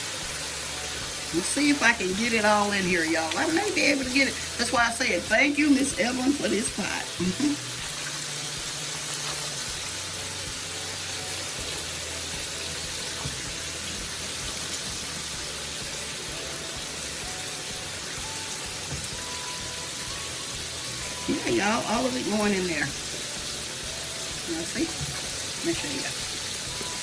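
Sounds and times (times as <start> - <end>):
food sizzling on a stove: 0.0 - 27.0.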